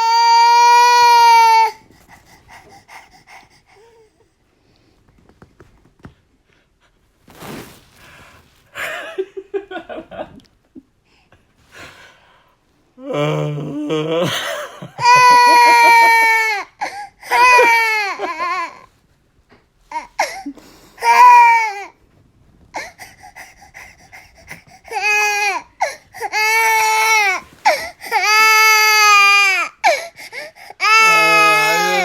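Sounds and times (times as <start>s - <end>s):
infant crying: 0.0s - 1.8s, 14.9s - 18.9s, 19.9s - 22.0s, 22.8s - 32.0s.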